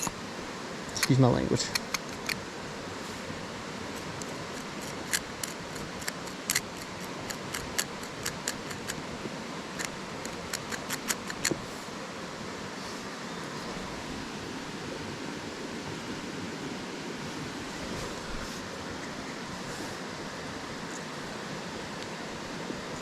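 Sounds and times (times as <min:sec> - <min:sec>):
river water rushing: 0:00.0 - 0:23.0
twigs crackling and snapping in fire: 0:04.0 - 0:09.0.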